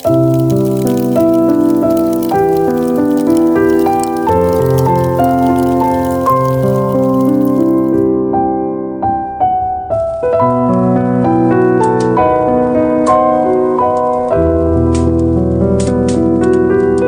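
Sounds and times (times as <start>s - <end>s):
firewood crackling: 0.0s - 8.2s
slow piano music: 0.0s - 17.0s.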